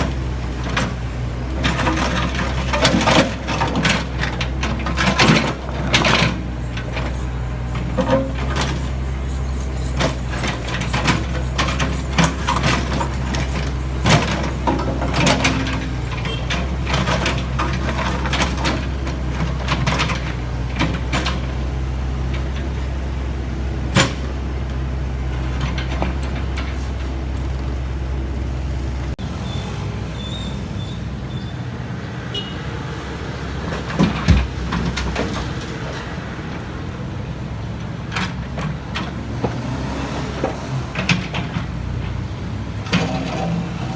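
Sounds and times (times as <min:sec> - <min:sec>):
diesel engine running: 0:00.0 - 0:43.9
light vehicle noise: 0:00.0 - 0:43.9
sharp knocks and clanks: 0:09.8 - 0:21.6, 0:33.7 - 0:36.1, 0:42.8 - 0:43.9.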